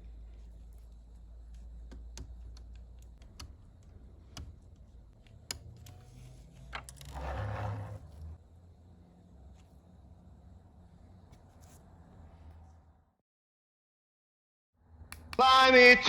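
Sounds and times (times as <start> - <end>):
light clicks and taps: 0.1 - 7.1.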